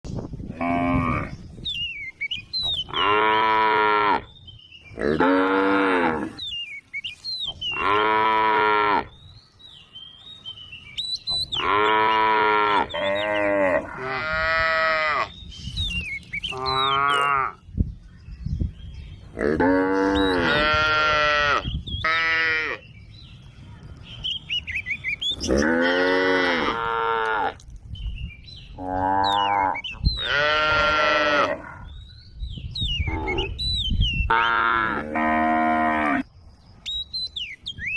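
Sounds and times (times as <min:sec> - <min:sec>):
cows mooing: 0:02.8 - 0:04.3, 0:05.0 - 0:06.4, 0:07.8 - 0:09.1, 0:11.6 - 0:15.3, 0:19.4 - 0:22.8, 0:25.4 - 0:27.6, 0:28.8 - 0:31.9, 0:34.3 - 0:36.2.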